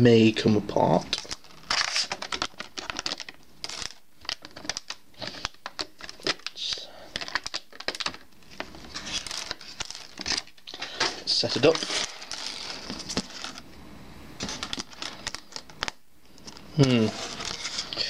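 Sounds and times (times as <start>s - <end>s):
plastic packaging crinkling: 0.9s - 13.7s, 14.4s - 18.0s.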